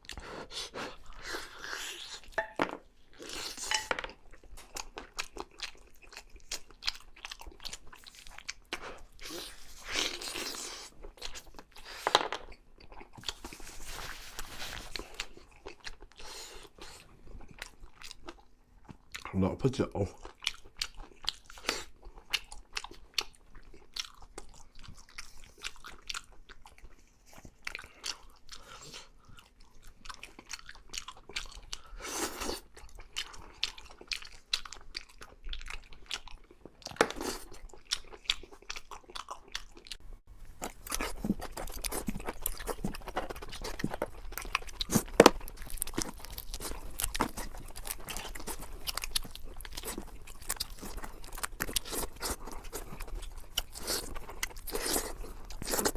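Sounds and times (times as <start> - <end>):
rustling or slurping: 13.1 - 17.2, 40.4 - 55.9
crunchy chewing: 20.1 - 40.0, 40.6 - 55.9.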